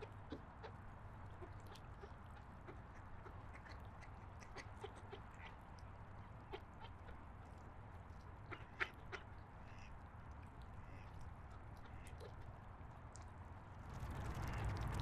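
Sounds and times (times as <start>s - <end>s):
duck calls: 0.0s - 5.6s, 8.5s - 9.9s
steady low rumble: 13.8s - 15.0s.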